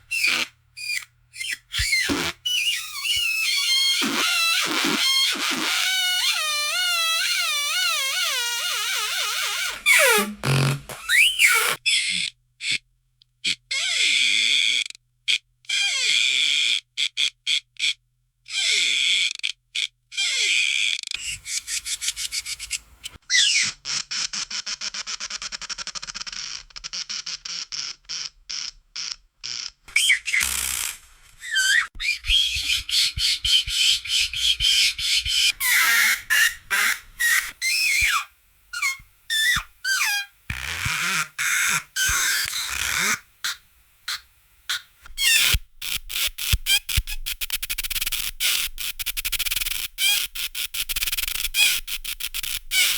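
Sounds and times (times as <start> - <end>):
rubber balloon squeaking: 0.0 - 12.8, 13.4 - 14.8, 15.7 - 16.8, 18.5 - 52.9.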